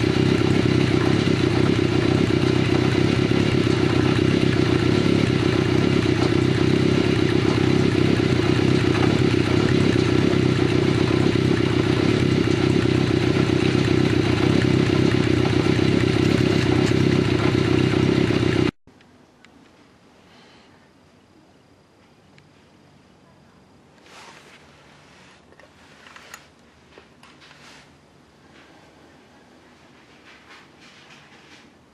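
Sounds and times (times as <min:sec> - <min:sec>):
motorcycle engine idling: 0:00.0 - 0:18.8.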